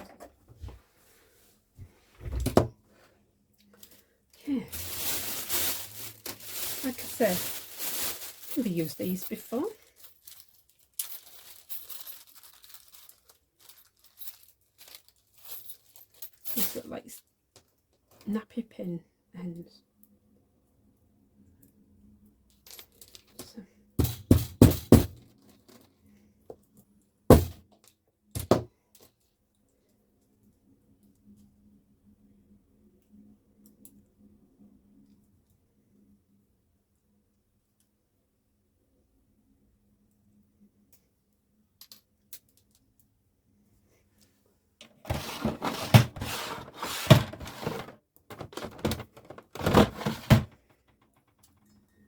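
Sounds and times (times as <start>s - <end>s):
objects clattering on a work surface: 0.0s - 0.8s, 44.8s - 51.7s.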